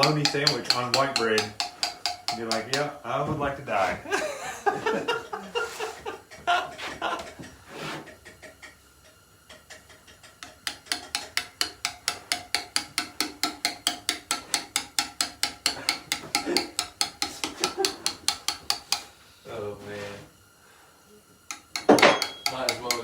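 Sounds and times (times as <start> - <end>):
mallet striking chisel on stone: 0.0 - 2.9, 9.5 - 19.1, 21.5 - 23.0.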